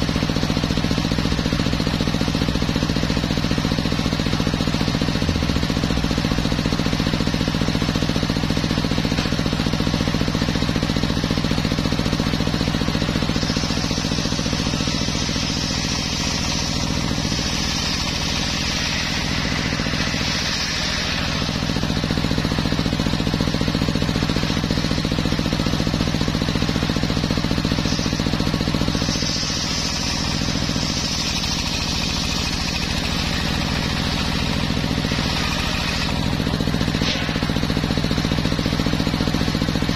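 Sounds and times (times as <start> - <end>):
circular sawmill running: 0.0 - 39.9
higher sawing noise: 12.5 - 26.3, 27.2 - 36.4.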